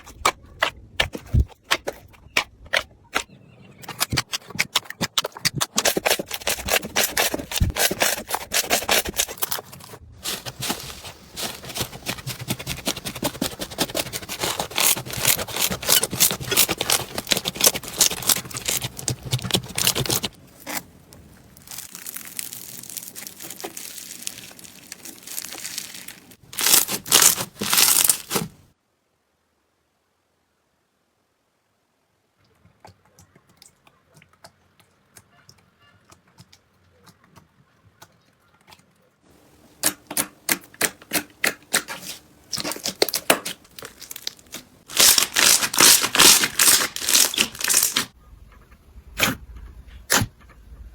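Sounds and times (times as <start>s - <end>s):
slime crackling and popping: 4.4s - 28.6s, 39.8s - 48.1s.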